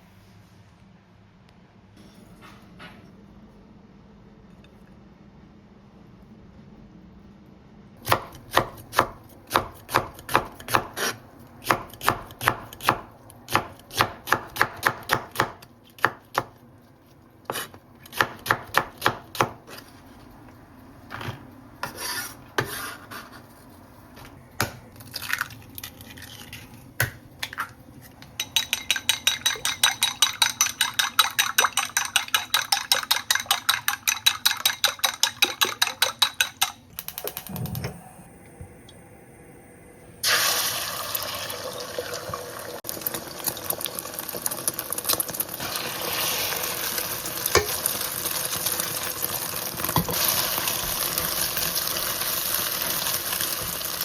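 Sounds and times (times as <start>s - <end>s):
knife chopping on cutting board: 8.0s - 16.5s, 17.5s - 19.8s.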